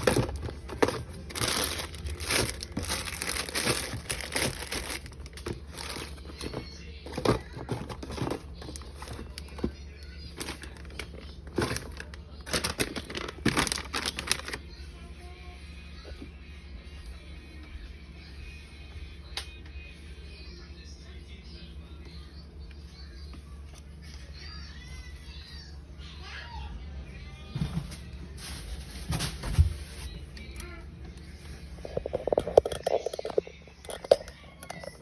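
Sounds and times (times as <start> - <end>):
plastic packaging crinkling: 0.0 - 14.8, 28.0 - 30.8, 31.8 - 35.0.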